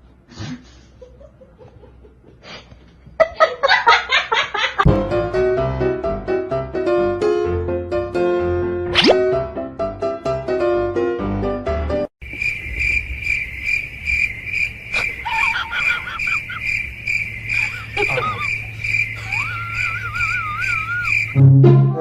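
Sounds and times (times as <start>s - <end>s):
music: 4.9s - 12.1s, 21.4s - 22.0s
crickets chirping: 12.2s - 21.4s.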